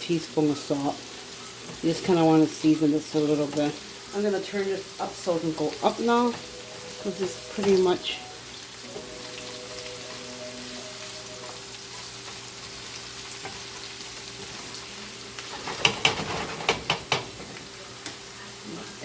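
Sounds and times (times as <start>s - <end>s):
vegetables sizzling in frying pan: 0.0s - 19.0s
utensil clacking against pan: 15.5s - 17.7s.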